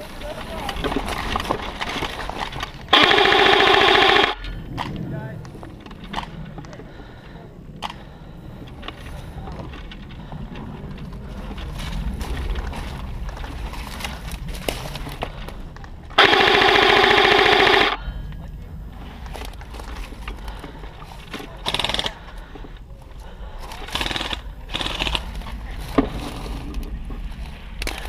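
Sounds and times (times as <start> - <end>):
airsoft gun full-auto burst: 2.9 - 4.6, 16.2 - 18.0, 21.6 - 22.2, 23.8 - 25.2.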